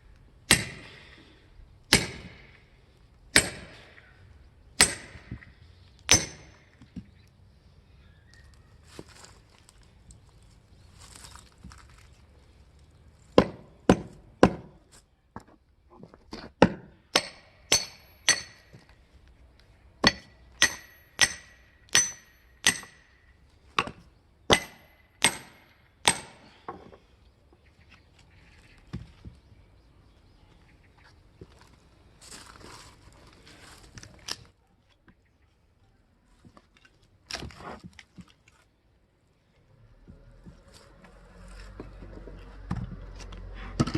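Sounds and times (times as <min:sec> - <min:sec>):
axe strikes splitting firewood: 0:00.5 - 0:01.1, 0:01.9 - 0:02.6, 0:03.3 - 0:03.9, 0:04.8 - 0:05.5, 0:06.1 - 0:06.9, 0:13.4 - 0:14.8, 0:16.4 - 0:18.9, 0:20.0 - 0:23.1, 0:23.8 - 0:26.6.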